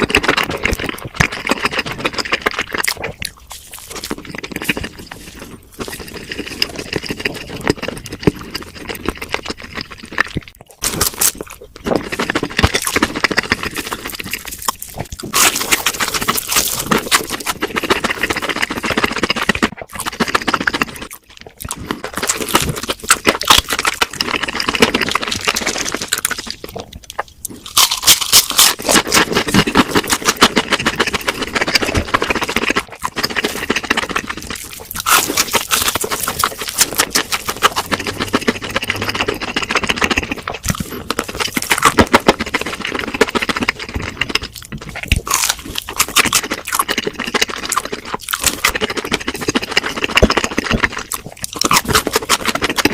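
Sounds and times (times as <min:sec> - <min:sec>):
crunching crispy food: 0:00.0 - 0:52.9.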